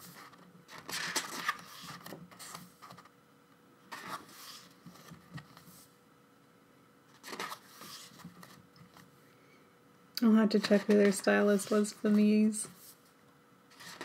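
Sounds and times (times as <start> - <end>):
paper pages rustling: 0.0 - 3.1, 3.9 - 5.9, 7.1 - 9.1, 13.7 - 14.0
faint steady hum: 0.0 - 14.0.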